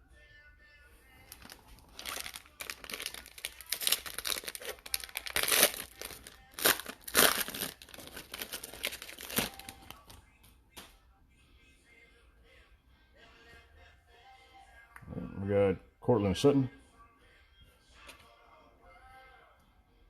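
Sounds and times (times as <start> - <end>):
foil wrapper tearing and crinkling: 1.3 - 10.2.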